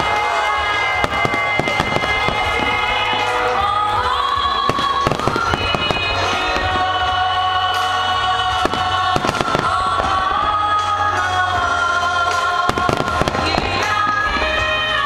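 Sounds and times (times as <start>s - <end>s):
fireworks bursting: 0.0s - 11.4s, 12.3s - 15.0s
music with sustained tones: 0.0s - 15.0s.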